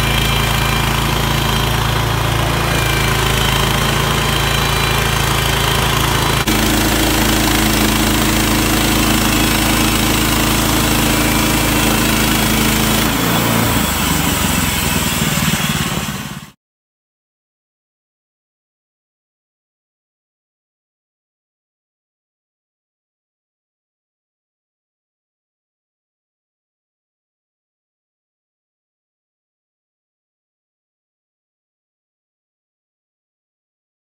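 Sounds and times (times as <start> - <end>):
sawmill engine running: 0.0 - 16.6.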